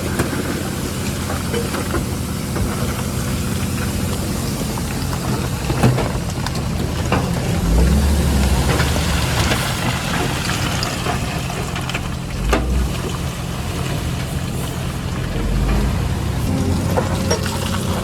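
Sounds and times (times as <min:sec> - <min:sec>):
heavy diesel machinery running: 0:00.0 - 0:18.0
sharp metallic clanks: 0:15.3 - 0:18.0.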